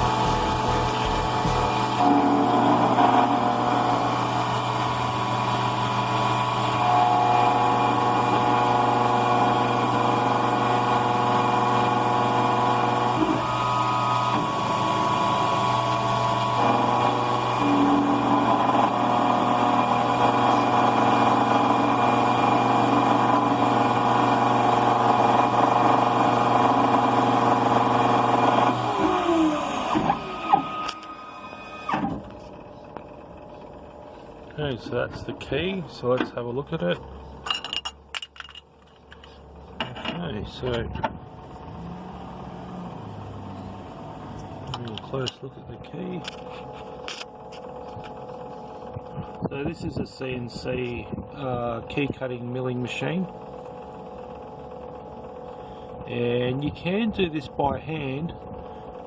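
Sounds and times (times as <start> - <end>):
key cutting machine motor whine: 0.0 - 34.5, 41.1 - 49.5, 53.0 - 56.1.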